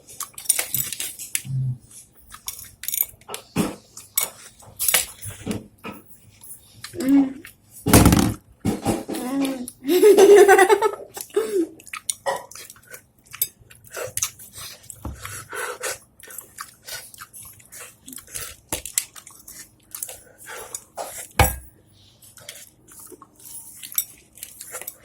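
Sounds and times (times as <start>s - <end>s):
crunchy chewing of sweets: 11.1s - 21.4s, 22.0s - 25.0s.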